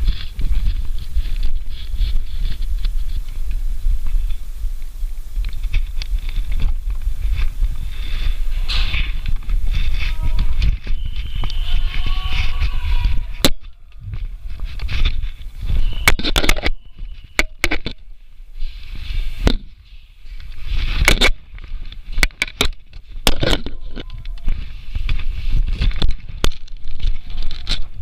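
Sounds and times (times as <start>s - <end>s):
crackling scrapes: 0.0s - 28.0s
microphone handling noise: 0.0s - 28.0s
wind rumble: 0.0s - 28.0s.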